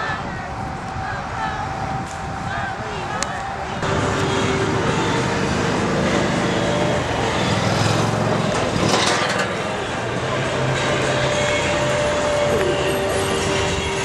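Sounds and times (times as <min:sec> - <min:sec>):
large vehicle engine drone: 0:00.0 - 0:14.0.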